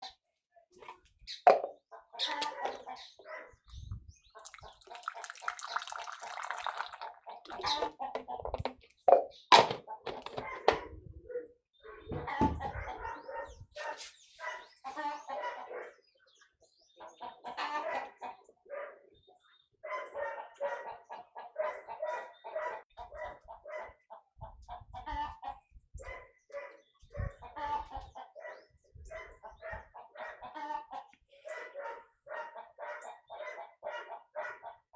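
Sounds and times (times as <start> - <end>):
chickens clucking: 0.8 - 4.9, 6.9 - 34.9
farmyard animals calling: 1.4 - 3.6, 6.7 - 8.6, 9.9 - 16.2, 17.0 - 19.2, 19.9 - 34.9.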